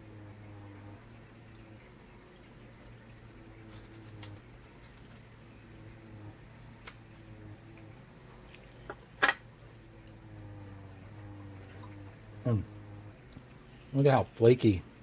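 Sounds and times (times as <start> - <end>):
cracker cracking: 3.7 - 5.3, 6.7 - 7.2
food packaging crinkling: 3.7 - 5.3.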